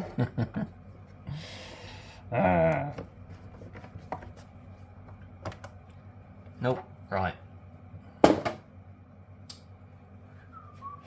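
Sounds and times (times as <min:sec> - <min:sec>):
man humming: 0:02.2 - 0:03.0.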